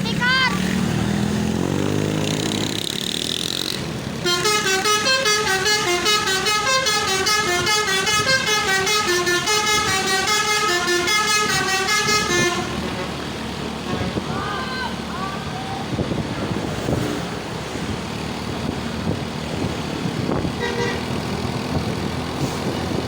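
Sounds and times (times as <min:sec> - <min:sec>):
vehicle engine running: 0:00.0 - 0:23.0
musical bus horn melody: 0:04.2 - 0:14.3, 0:20.5 - 0:21.2.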